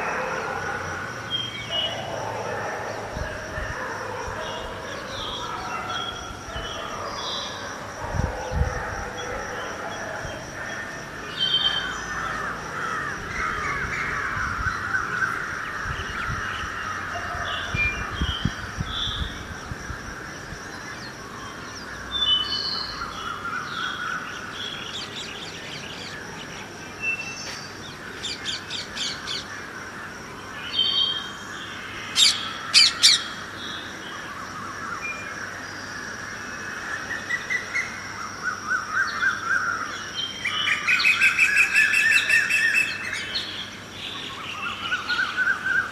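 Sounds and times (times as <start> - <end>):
birds chirping and calling: 32.1 - 33.4
loud sharp bird calls: 32.1 - 33.6.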